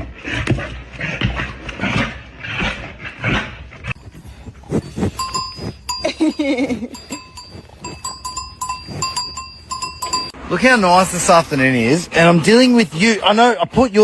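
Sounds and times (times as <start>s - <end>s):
animal huffing rhythmically: 0.0s - 10.4s
bell ringing: 4.8s - 10.4s.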